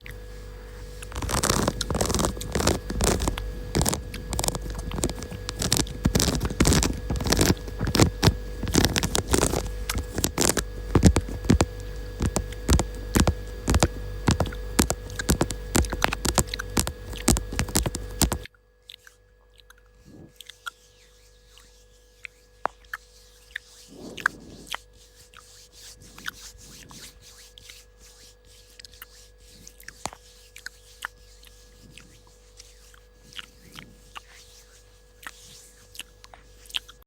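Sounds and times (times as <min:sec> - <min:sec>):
faint steady hum: 0:00.0 - 0:37.0
sharp clicks and crackles: 0:01.0 - 0:19.0.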